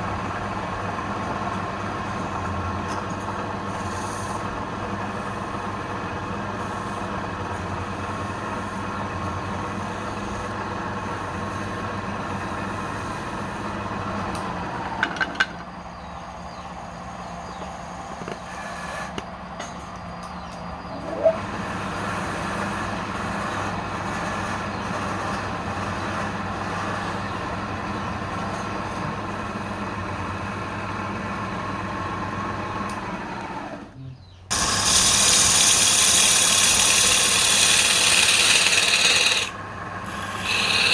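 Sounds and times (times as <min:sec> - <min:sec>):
tool rasping on spinning wood: 0:18.1 - 0:19.2, 0:34.5 - 0:40.9
wood lathe motor humming: 0:34.5 - 0:40.9.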